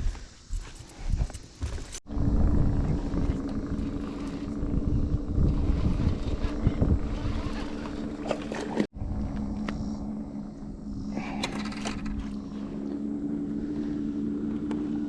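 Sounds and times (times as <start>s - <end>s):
hull rumbling on water: 2.1s - 9.2s
outboard motor running: 2.1s - 15.0s.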